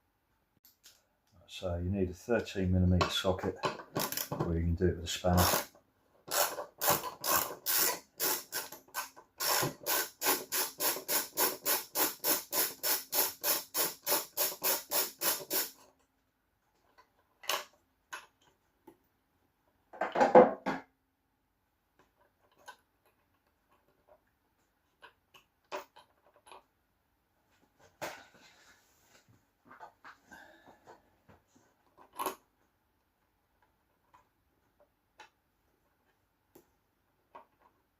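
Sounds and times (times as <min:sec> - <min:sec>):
socket ratchet clicking: 0:05.4 - 0:05.7, 0:06.3 - 0:15.8.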